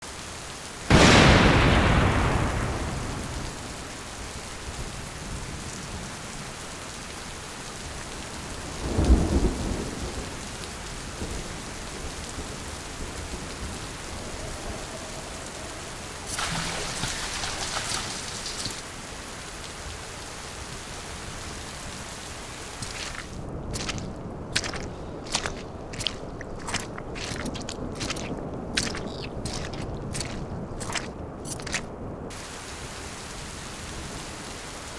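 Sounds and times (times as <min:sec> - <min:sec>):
heavy rain: 0:00.0 - 0:34.9
crackling burst: 0:00.9 - 0:04.1
thunder rumbling: 0:00.9 - 0:05.6.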